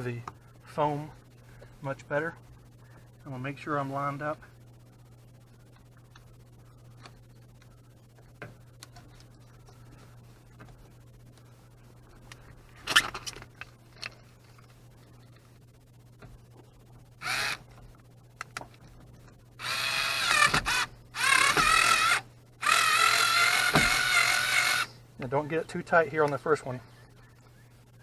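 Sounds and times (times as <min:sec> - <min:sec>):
cordless drill motor whining: 0:17.2 - 0:17.7, 0:19.6 - 0:25.0.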